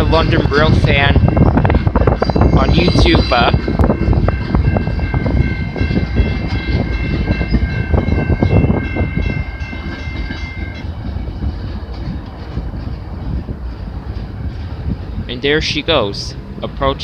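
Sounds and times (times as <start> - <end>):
train wheels clacking: 0.0 - 15.3
heavy train rumble: 0.0 - 17.0
high ringing tone: 1.3 - 10.9.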